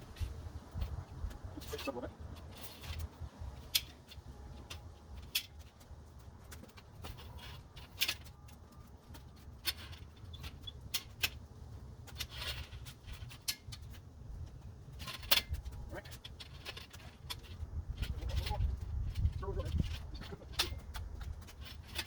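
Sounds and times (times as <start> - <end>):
metal frame clicks and rattles: 0.7 - 22.0
steady low rumble: 13.8 - 21.6.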